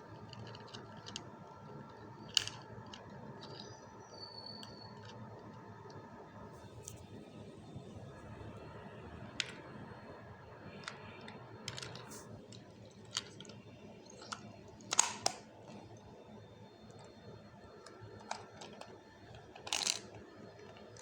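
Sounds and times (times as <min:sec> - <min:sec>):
plastic toy clicks and clacks: 0:00.0 - 0:03.9, 0:10.8 - 0:15.9, 0:17.8 - 0:21.0.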